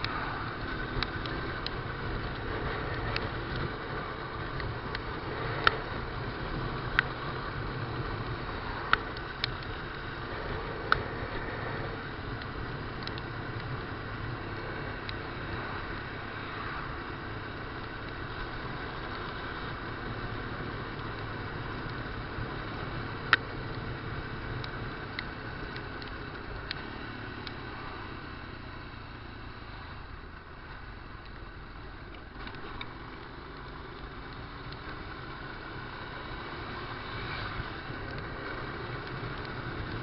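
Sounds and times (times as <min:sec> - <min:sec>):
motorcycle engine running: 0:00.0 - 0:40.0
wind and road noise: 0:00.0 - 0:40.0
sharp ticks: 0:08.2 - 0:11.1, 0:12.3 - 0:13.8.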